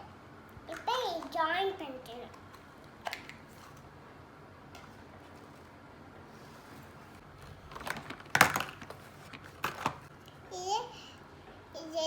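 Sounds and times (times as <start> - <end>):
plastic blocks clicking and rattling: 7.7 - 10.0.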